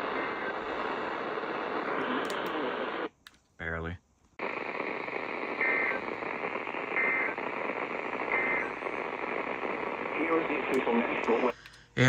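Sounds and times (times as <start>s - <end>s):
radio static hiss: 0.0s - 3.1s, 4.4s - 11.6s
digital data tone bursts: 5.0s - 10.0s.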